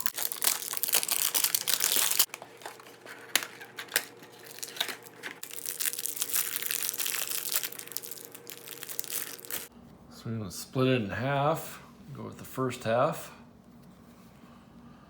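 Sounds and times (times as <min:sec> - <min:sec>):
plastic wrapper crinkling: 0:00.0 - 0:09.7.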